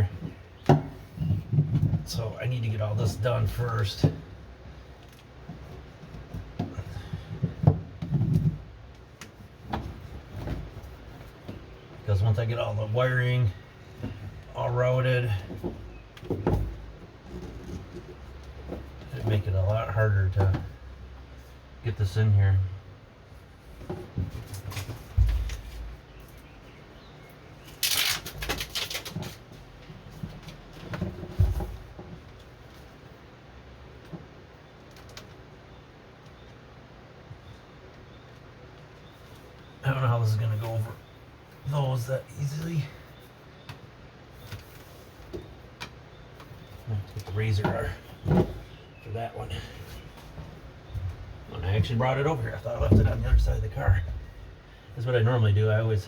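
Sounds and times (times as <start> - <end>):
knocks and thumps of handling: 0.0 - 2.2, 3.0 - 4.4, 5.0 - 12.0, 13.5 - 21.0, 23.7 - 26.5, 28.2 - 32.9, 43.6 - 54.8
crinkly foil sheet rustle: 27.8 - 29.4.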